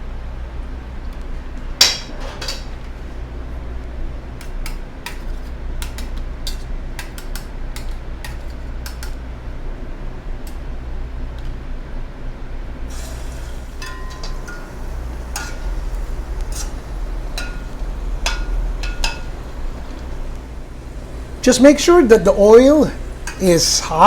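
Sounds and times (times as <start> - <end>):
steady low hum: 9.3 - 24.0
utensil clinking against bowl: 13.8 - 15.7, 17.4 - 20.0, 23.2 - 24.0.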